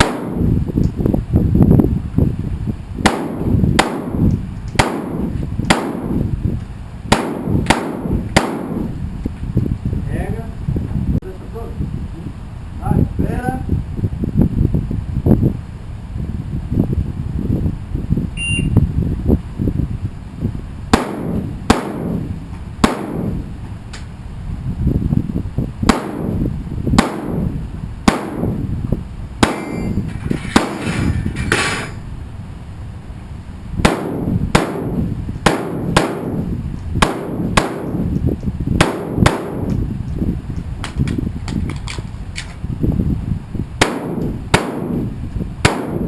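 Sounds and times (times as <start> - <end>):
shotgun firing: 0.0 - 0.4, 3.0 - 4.2, 4.8 - 6.2, 7.1 - 8.9, 21.0 - 23.4, 25.9 - 26.4, 27.0 - 27.5, 28.1 - 28.6, 29.4 - 30.0, 33.8 - 38.0, 38.8 - 39.7, 43.8 - 46.0
low wind rumble: 0.0 - 46.0.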